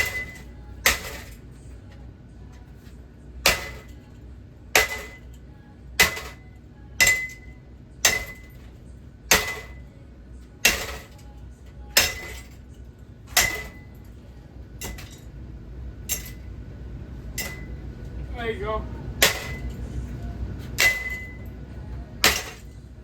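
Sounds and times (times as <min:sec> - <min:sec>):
heavy blows with metallic ring: 0:06.0 - 0:09.9, 0:12.0 - 0:12.7, 0:13.3 - 0:14.1, 0:16.0 - 0:18.2, 0:18.9 - 0:22.9.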